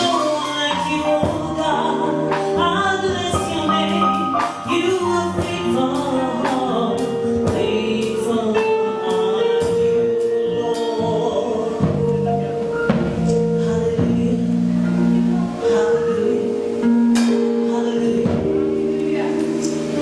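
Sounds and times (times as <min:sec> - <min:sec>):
band playing: 0:00.0 - 0:20.0
percussion strikes: 0:16.8 - 0:20.0.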